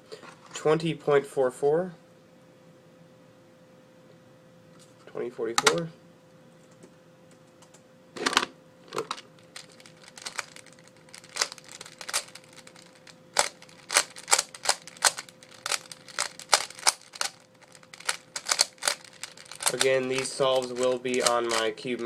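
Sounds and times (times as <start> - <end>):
puzzle cube plastic clicks: 9.6 - 21.7.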